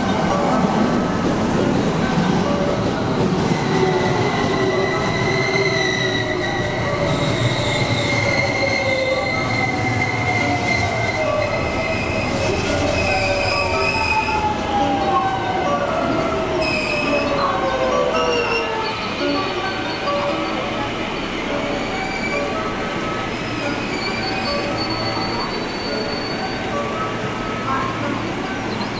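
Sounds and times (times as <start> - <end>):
train wheel squeal: 0.0 - 28.9.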